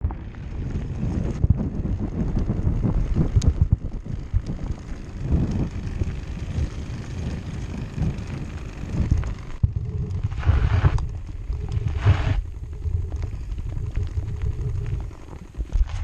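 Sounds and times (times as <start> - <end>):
cardboard flapping against bicycle spokes: 0.0 - 16.0
wind rumbling on microphone: 0.0 - 16.0
short rushes of noise: 9.0 - 16.0.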